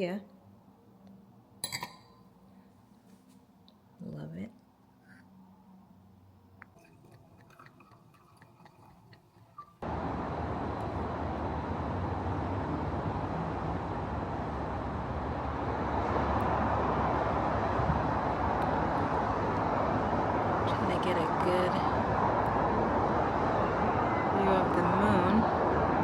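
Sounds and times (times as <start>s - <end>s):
city traffic: 9.8s - 26.0s.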